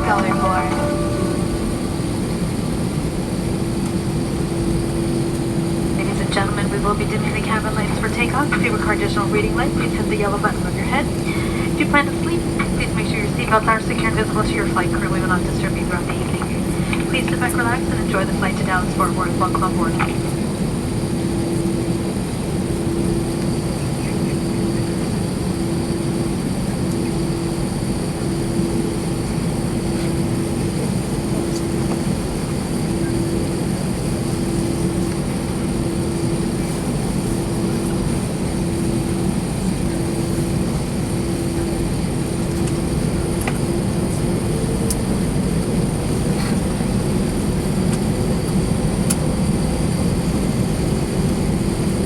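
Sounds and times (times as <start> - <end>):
higher tone: 0.0 - 3.1
aircraft cabin engine hum: 0.0 - 52.0.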